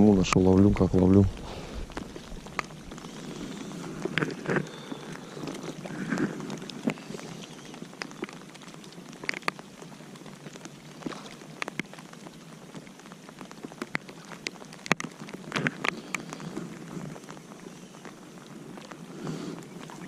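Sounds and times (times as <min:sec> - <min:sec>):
rain hissing: 0:00.0 - 0:20.0
raindrops tapping close by: 0:00.0 - 0:20.0.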